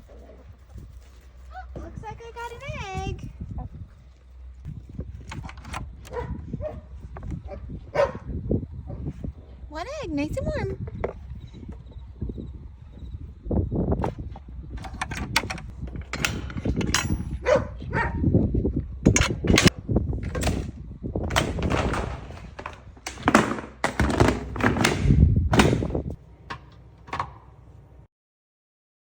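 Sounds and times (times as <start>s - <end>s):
wind rumble on microphone: 0.0s - 26.2s
knocks thuds and rattles: 13.9s - 17.6s, 19.0s - 26.2s.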